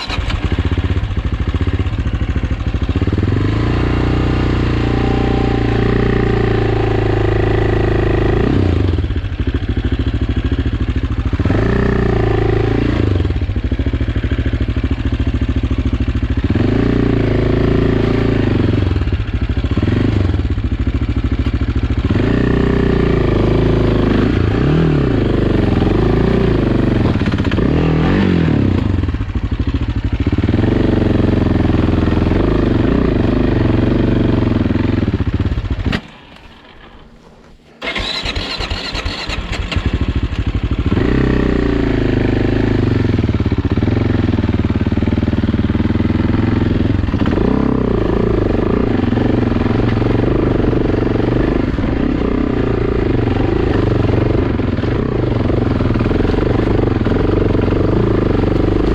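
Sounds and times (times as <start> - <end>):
motorcycle engine revving: 0.0 - 58.9
electric starter whining: 35.8 - 39.9.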